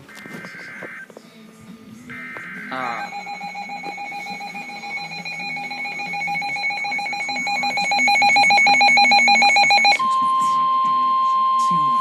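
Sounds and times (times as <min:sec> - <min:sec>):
two-tone alarm with fast flutter: 0:02.2 - 0:10.0.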